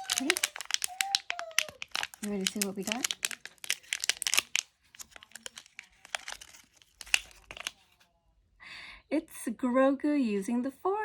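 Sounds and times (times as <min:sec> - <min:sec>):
packaging crinkling: 0:00.0 - 0:07.9.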